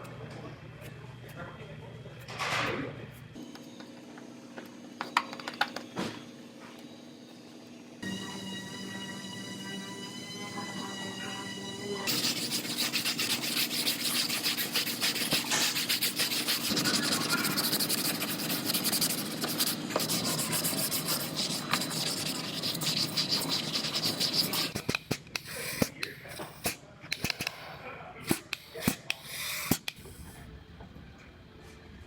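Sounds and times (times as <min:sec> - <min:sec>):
sanding car body panel: 0:12.1 - 0:24.8.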